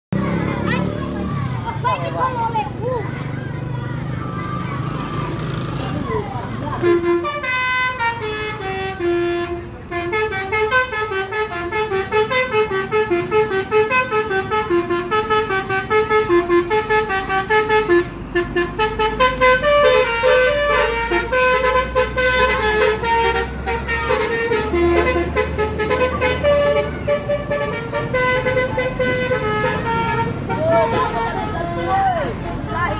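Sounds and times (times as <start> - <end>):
multi-tone truck horn tune: 6.7 - 32.9.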